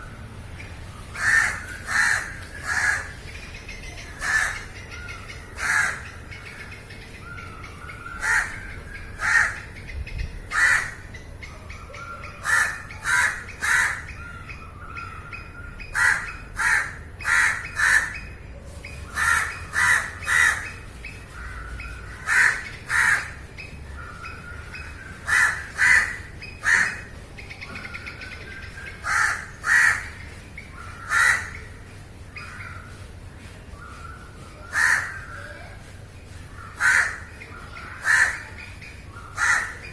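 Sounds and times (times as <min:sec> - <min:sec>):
crows cawing: 0:01.2 - 0:03.2, 0:04.2 - 0:06.2, 0:08.2 - 0:09.7, 0:10.5 - 0:11.1, 0:12.4 - 0:14.1, 0:16.0 - 0:18.2, 0:19.2 - 0:23.4, 0:25.2 - 0:27.1, 0:29.0 - 0:30.2, 0:31.0 - 0:31.7, 0:34.7 - 0:35.3, 0:36.8 - 0:37.3, 0:38.0 - 0:38.5, 0:39.4 - 0:39.8.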